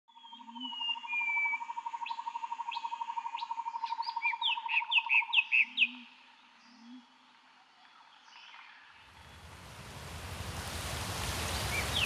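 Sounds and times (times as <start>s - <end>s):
birds whistling: 11.4s - 12.0s.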